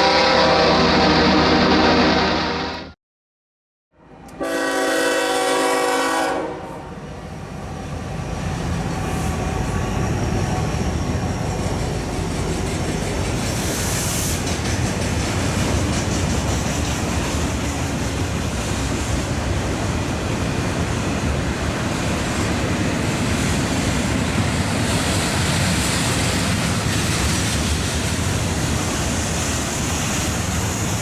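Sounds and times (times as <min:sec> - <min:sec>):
diesel locomotive horn: 0:00.0 - 0:03.0, 0:04.2 - 0:07.1
train rumbling by: 0:04.1 - 0:31.0.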